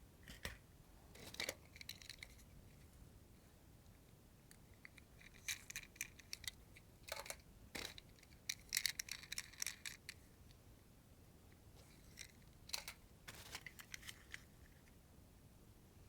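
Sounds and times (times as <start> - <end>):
toy packaging clicks and crinkles: 1.2 - 2.4, 4.8 - 10.2, 12.0 - 14.5.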